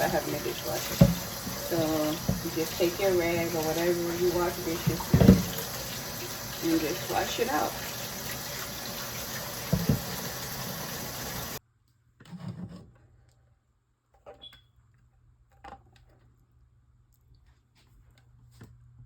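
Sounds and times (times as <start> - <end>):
tap water running into sink: 0.0 - 11.6.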